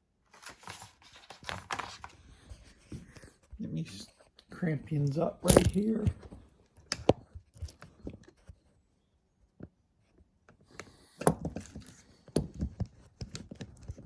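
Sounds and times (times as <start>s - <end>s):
handling clicks and knocks: 5.0s - 8.5s.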